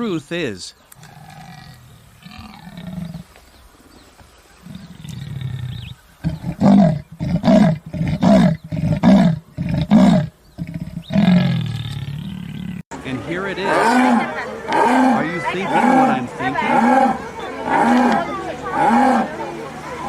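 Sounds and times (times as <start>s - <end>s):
leopard sawing roar: 13.6s - 19.4s.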